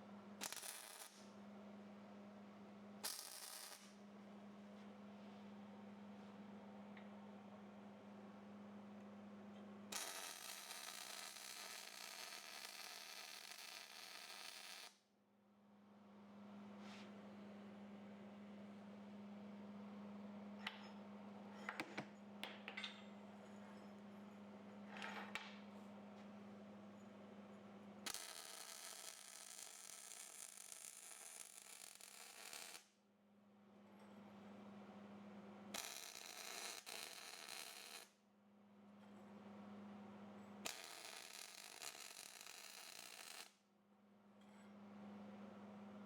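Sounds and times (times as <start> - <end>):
faint steady hum: 15.4 - 28.1.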